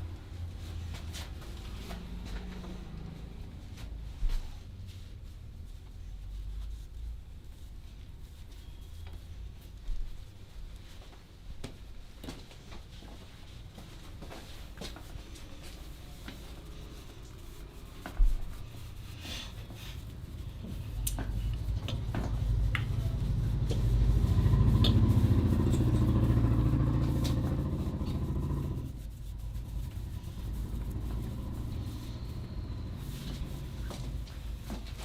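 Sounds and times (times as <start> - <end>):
vehicle engine passing by: 0.0 - 3.9, 15.5 - 34.7.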